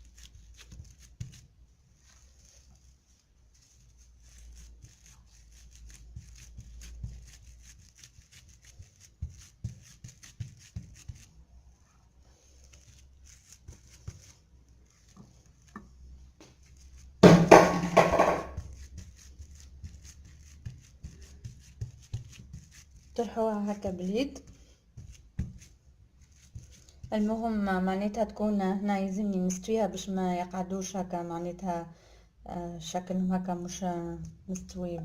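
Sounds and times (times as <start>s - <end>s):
hands patting and rustling wrap: 0.0s - 27.6s.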